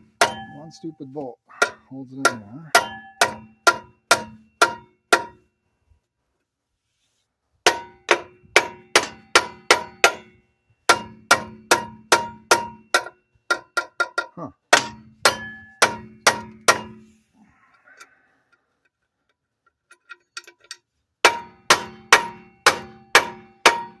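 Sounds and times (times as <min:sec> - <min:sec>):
ringing metal-on-metal strikes: 0:00.0 - 0:05.5, 0:07.7 - 0:17.1, 0:21.2 - 0:24.0.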